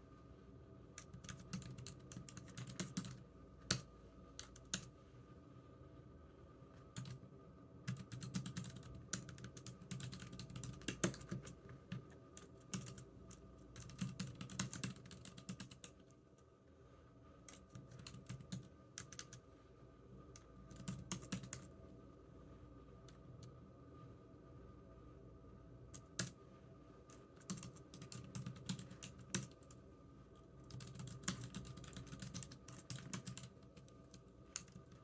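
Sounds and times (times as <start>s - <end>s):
computer keyboard typing: 1.0s - 4.9s, 7.0s - 7.2s, 7.9s - 16.1s, 17.5s - 19.4s, 20.4s - 21.7s, 25.9s - 26.4s, 27.4s - 29.8s, 30.6s - 35.0s.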